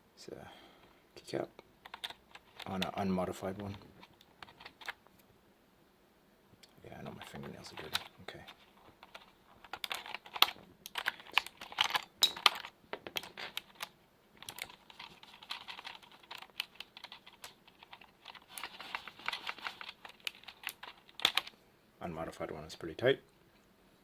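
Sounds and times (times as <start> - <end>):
mechanical keyboard keys clicking: 9.0 - 21.5.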